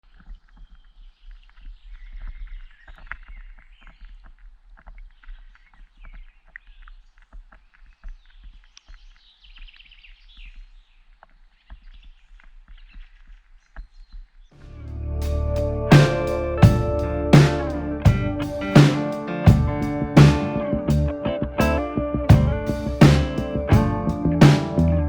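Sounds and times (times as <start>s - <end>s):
low steady hum: 14.6s - 18.7s.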